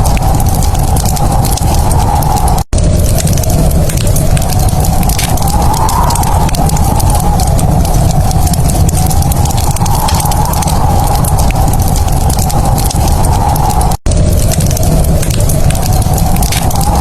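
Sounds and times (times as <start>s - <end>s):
log fire crackling: 0.0s - 17.0s.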